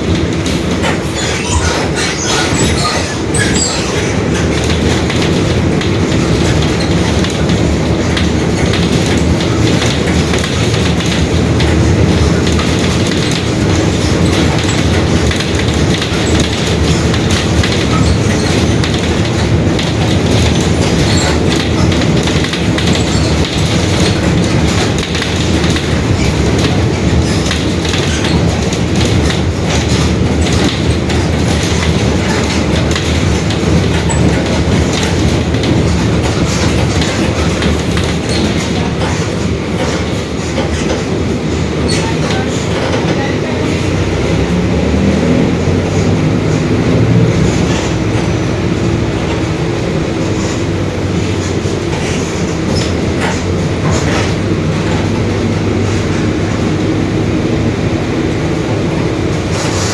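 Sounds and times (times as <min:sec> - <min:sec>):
rattles: 0:00.0 - 0:43.2
bus drivetrain rumble: 0:00.0 - 0:59.9.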